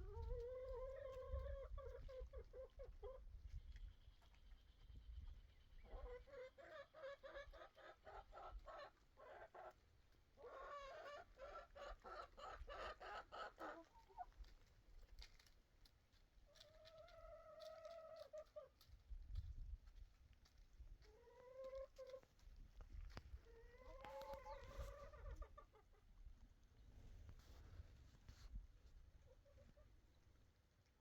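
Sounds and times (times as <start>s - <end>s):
chickens clucking: 0.0s - 4.6s, 5.8s - 14.4s, 16.5s - 18.9s, 21.0s - 22.4s, 23.4s - 26.8s, 29.2s - 30.3s.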